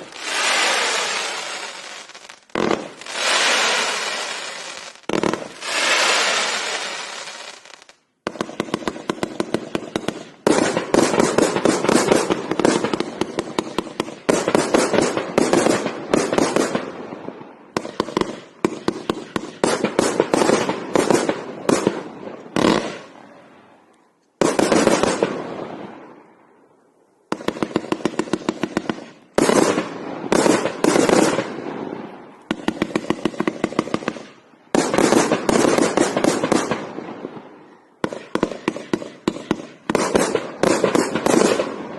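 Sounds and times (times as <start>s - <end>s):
fireworks hiss: 0.0s - 8.0s
fireworks firing rapid volleys: 0.0s - 23.2s, 24.4s - 26.0s, 27.3s - 41.9s.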